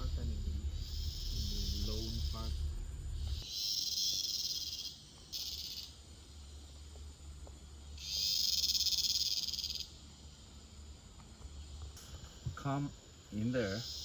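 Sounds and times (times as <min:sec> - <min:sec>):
low steady hum: 0:00.0 - 0:03.5
cicadas buzzing: 0:00.0 - 0:14.0.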